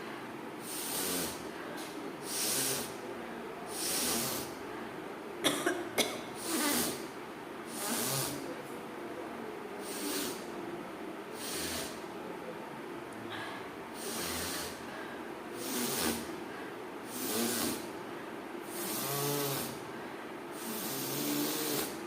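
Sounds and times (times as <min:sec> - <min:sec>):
person coughing: 0:05.4 - 0:07.0.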